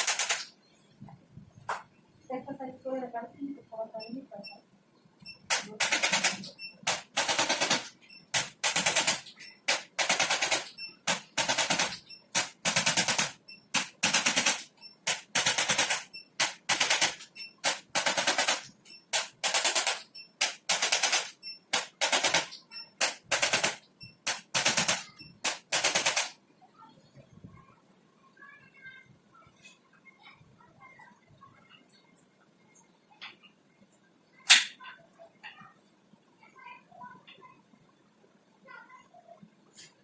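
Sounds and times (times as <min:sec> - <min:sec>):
mechanical rattling bursts: 0:05.5 - 0:26.4.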